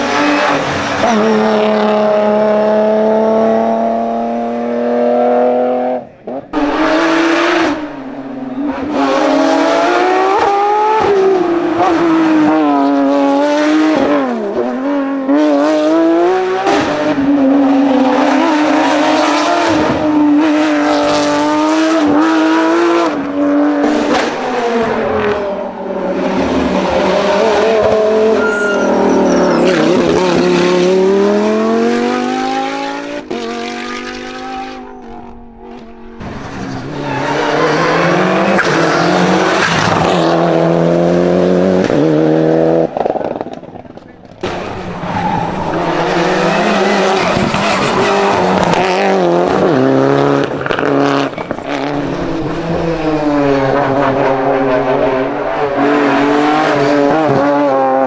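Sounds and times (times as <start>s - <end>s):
racing car engine at high revs: 0.0s - 58.0s
another engine revving: 6.6s - 14.2s, 44.4s - 51.2s, 51.8s - 58.0s.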